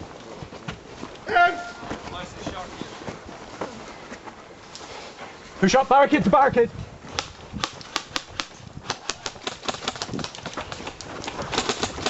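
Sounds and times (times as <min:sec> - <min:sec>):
airsoft guns firing: 0:07.6 - 0:10.3, 0:11.3 - 0:12.0.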